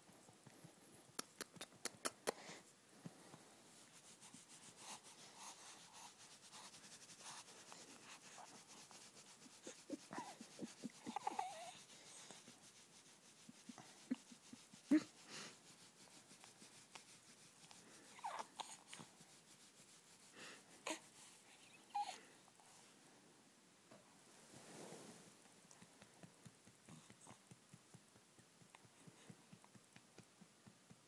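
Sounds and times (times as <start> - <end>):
baby soft vocal sounds: 9.6 - 11.9, 20.8 - 22.3.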